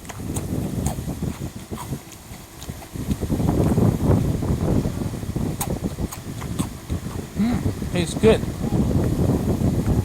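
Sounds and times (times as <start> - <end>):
chewing crunchy breadsticks: 0.0 - 3.8, 5.5 - 7.4.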